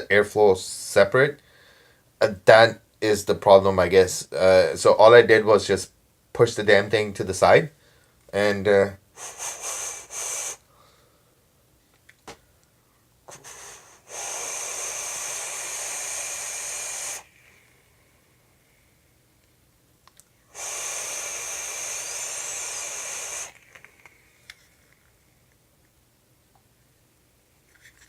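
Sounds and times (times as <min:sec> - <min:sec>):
air hissing through atomizer: 0:09.1 - 0:10.8, 0:13.3 - 0:26.0
faint clicks: 0:19.4 - 0:20.3, 0:23.4 - 0:26.7.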